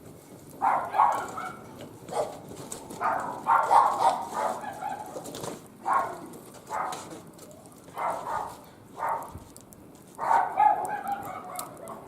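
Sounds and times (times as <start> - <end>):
wood fire crackling: 0.0 - 12.0
dog barking: 0.6 - 2.4, 3.0 - 7.1, 8.0 - 9.4, 10.2 - 12.0.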